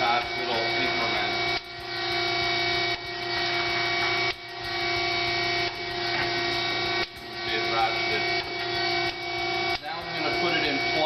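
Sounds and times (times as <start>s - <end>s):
surface grinder running: 0.0s - 11.0s.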